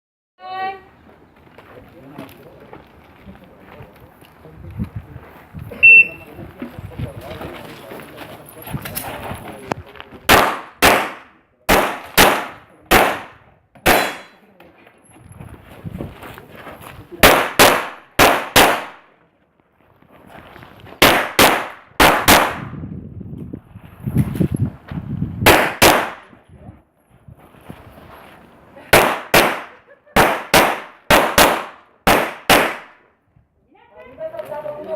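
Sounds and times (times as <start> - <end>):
pistol shots: 10.3 - 14.4, 17.2 - 19.0, 21.0 - 22.7, 25.4 - 26.3, 28.9 - 33.0.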